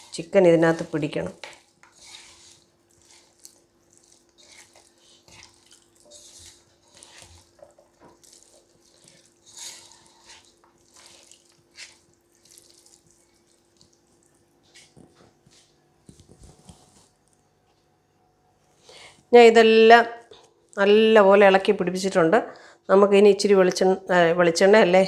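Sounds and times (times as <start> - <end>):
hands rubbing marinade into chicken: 0.0 - 17.2.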